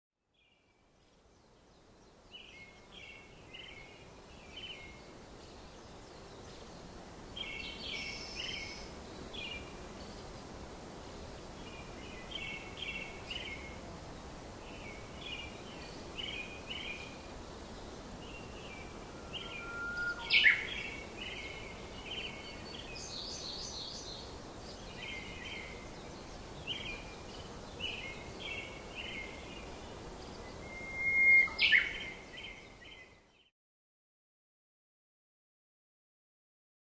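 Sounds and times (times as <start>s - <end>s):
steady background hiss: 0.3s - 33.4s
small birds chirping: 11.6s - 33.5s.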